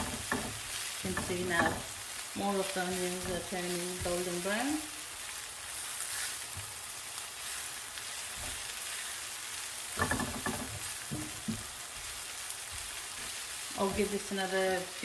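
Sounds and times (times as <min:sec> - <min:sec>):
oil sizzling in a pan: 0:00.0 - 0:15.0
utensil knocking against pan: 0:10.0 - 0:11.6.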